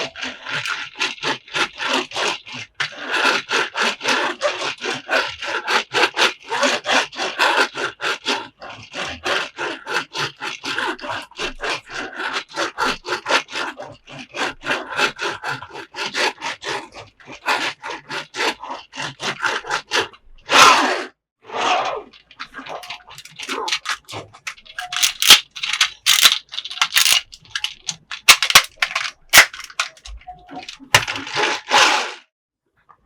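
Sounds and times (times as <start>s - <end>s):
rapid scraping strokes: 22.7s - 32.2s.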